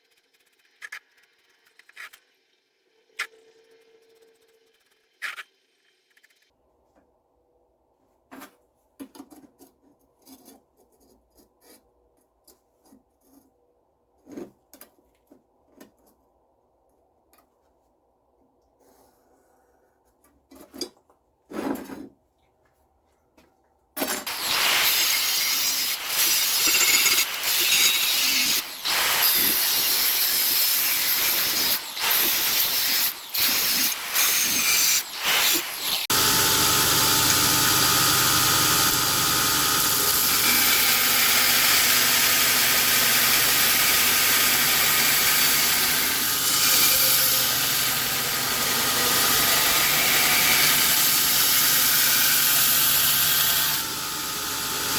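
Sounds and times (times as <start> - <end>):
grinder hissing on steel: 24.2 - 54.9
steady machine hum: 36.1 - 50.4.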